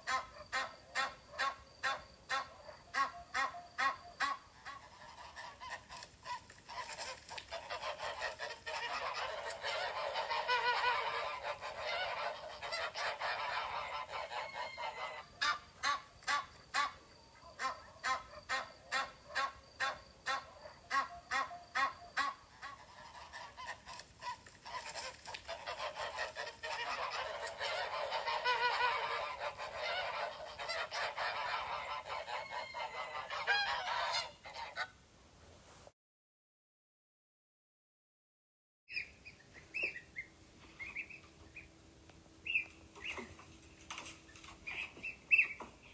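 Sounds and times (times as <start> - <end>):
geese honking: 0.0 - 34.9.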